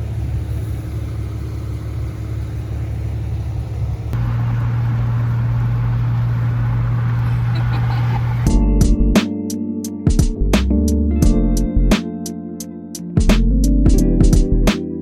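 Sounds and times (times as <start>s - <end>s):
low rumble: 3.9s - 9.2s
steady hum: 4.2s - 8.5s.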